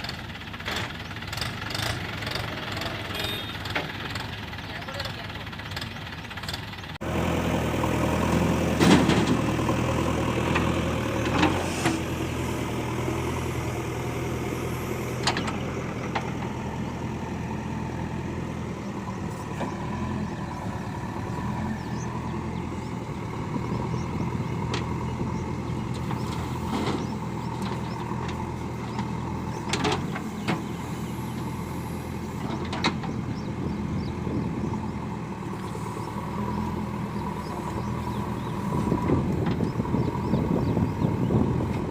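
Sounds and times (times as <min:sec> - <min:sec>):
diesel engine running: 0:00.0 - 0:41.9.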